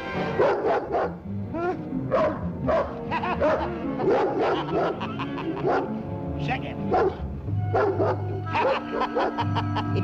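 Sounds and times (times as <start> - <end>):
background music: 0.0 - 10.0
dog barking: 0.4 - 6.0, 6.9 - 9.4.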